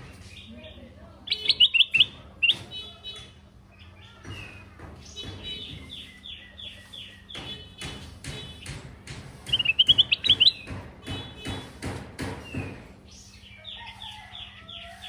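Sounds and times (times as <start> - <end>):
bulbul singing: 0.0 - 15.0
bird clicks: 9.4 - 10.7.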